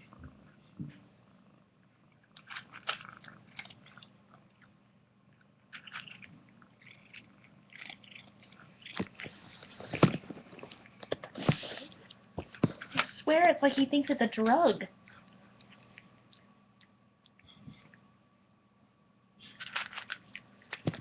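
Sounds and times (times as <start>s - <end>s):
cat crunching dry kibble: 2.2s - 4.7s, 5.3s - 14.3s, 19.4s - 21.0s.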